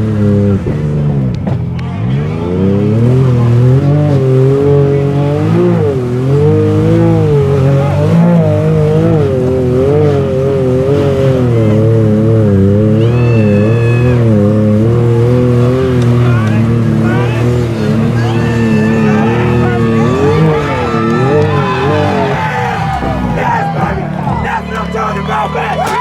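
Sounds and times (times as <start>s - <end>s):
off-road vehicle engine revving: 0.0s - 26.0s.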